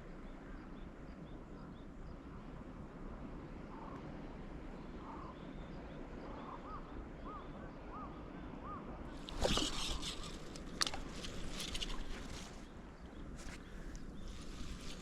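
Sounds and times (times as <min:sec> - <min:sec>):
rustling: 0:09.2 - 0:15.0.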